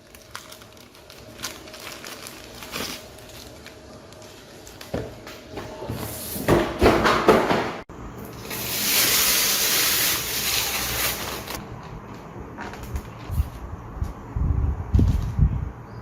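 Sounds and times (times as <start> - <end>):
packaging sliding hiss: 8.4 - 11.6.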